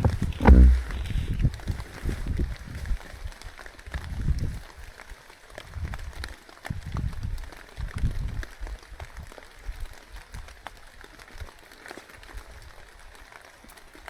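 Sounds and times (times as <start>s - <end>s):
drops ticking on microphone: 0.0s - 1.5s
wind buffeting microphone: 0.0s - 3.3s
rain falling: 0.0s - 14.0s.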